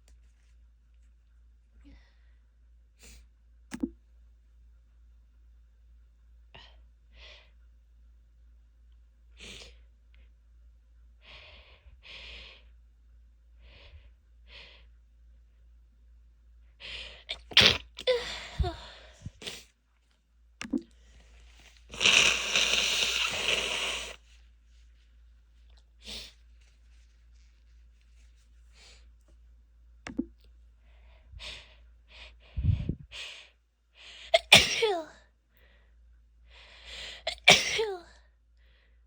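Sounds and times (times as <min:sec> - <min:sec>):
woman sniffing: 0:21.9 - 0:24.2
woman sneezing: 0:22.0 - 0:24.2, 0:34.3 - 0:35.2, 0:37.3 - 0:38.1.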